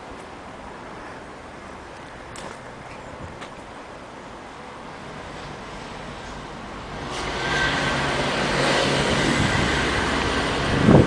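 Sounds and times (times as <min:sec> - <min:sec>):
road vehicle passing by: 0:04.8 - 0:11.0.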